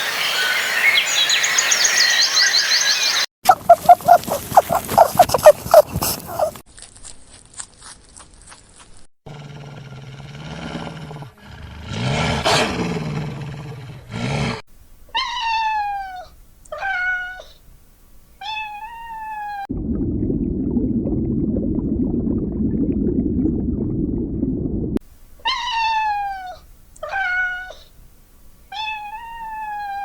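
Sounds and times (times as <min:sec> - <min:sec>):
cat meowing: 0:15.2 - 0:17.6, 0:18.4 - 0:19.7, 0:25.4 - 0:27.9, 0:28.7 - 0:30.0
low rumbling noise: 0:19.7 - 0:25.0.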